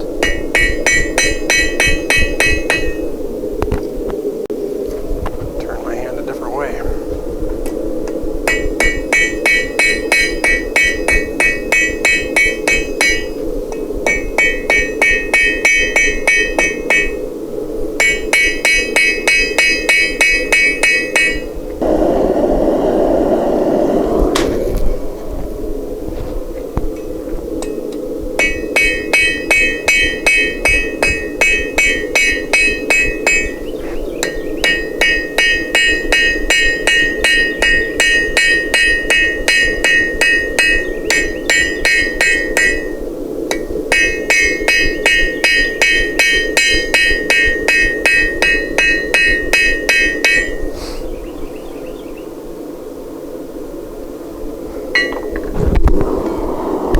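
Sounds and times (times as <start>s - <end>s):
hammer ringing on anvil: 0.2s - 3.0s, 14.1s - 17.2s, 18.0s - 21.5s, 28.4s - 50.7s
low rushing noise: 4.3s - 8.4s, 21.7s - 28.3s, 55.2s - 56.9s.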